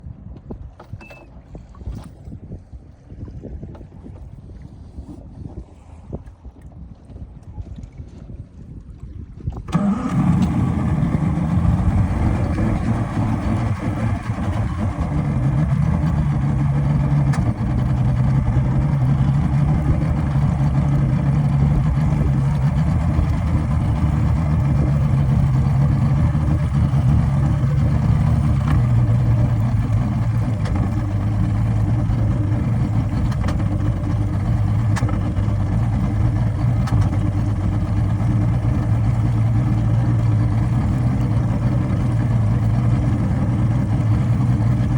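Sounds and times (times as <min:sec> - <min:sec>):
engine running with misfire: 0:09.7 - 0:44.9.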